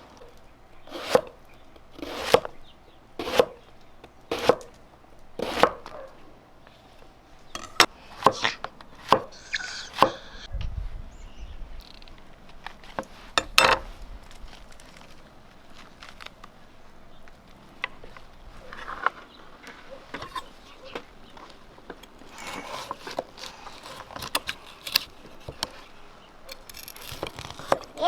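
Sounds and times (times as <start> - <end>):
knife chopping on cutting board: 3.2 - 3.6, 4.3 - 4.7, 5.4 - 5.9, 7.6 - 9.3.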